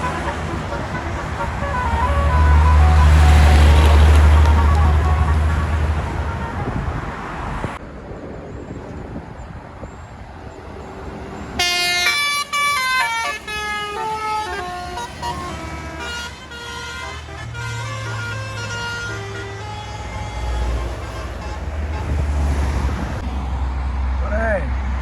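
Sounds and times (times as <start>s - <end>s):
multi-note bus air horn tune: 0.0s - 7.2s, 11.6s - 22.5s.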